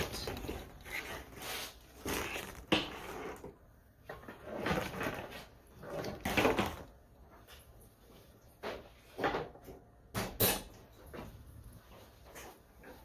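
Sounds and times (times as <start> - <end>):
clunks and rattles of fittings: 8.6 - 11.5.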